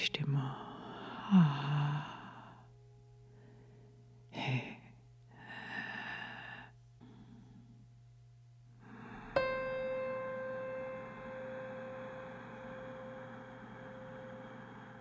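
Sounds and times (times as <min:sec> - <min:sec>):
person sighing: 0:00.4 - 0:02.6.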